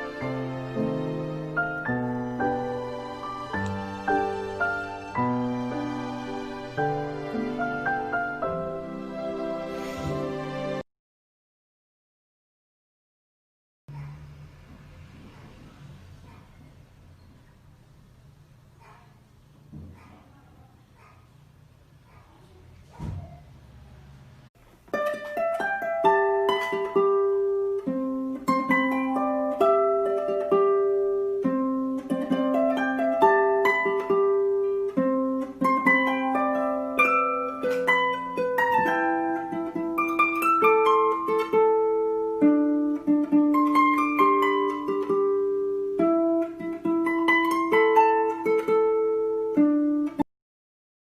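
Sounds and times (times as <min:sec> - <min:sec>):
plucked string melody: 0:00.0 - 0:10.8, 0:24.7 - 0:50.2.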